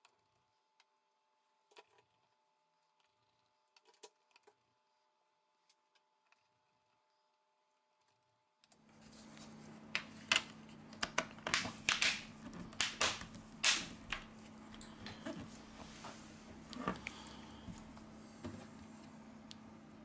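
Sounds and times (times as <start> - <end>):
steady low hum: 8.8 - 20.0.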